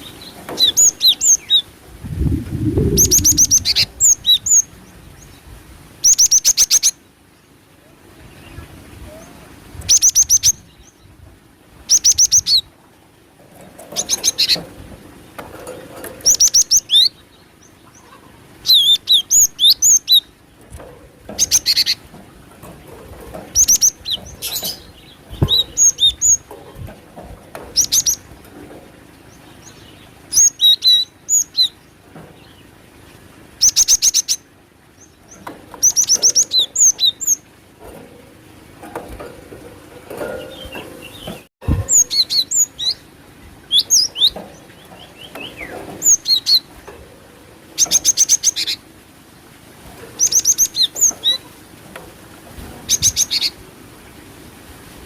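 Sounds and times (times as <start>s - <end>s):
bird high chattering calls: 2.7s - 4.7s.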